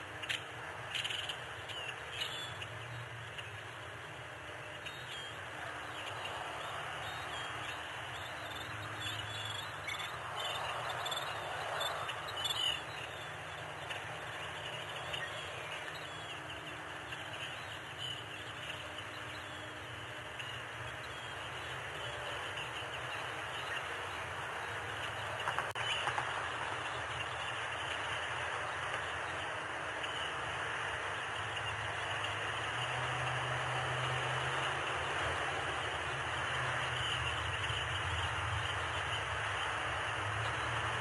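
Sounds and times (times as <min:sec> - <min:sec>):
outdoor background noise: 0:00.0 - 0:41.0.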